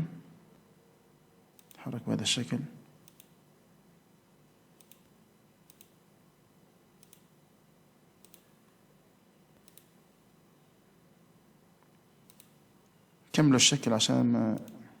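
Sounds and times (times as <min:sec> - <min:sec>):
faint computer mouse clicks: 0:01.6 - 0:01.8, 0:03.0 - 0:03.4, 0:04.8 - 0:06.0, 0:07.0 - 0:07.3, 0:08.2 - 0:08.8, 0:09.6 - 0:10.0, 0:11.8 - 0:13.0.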